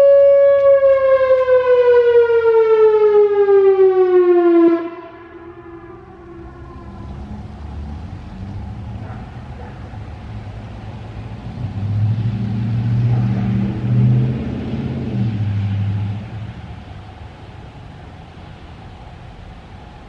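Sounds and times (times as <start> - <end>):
road rumble: 0.0 - 20.0
vehicle engine passing: 5.2 - 20.0.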